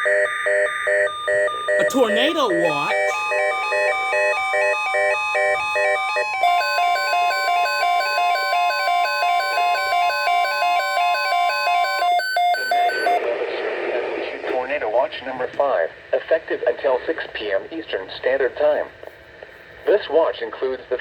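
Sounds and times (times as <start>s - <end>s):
steady single-pitch warning tone: 0.0s - 13.2s
rapid electronic alert beeping: 0.5s - 13.2s.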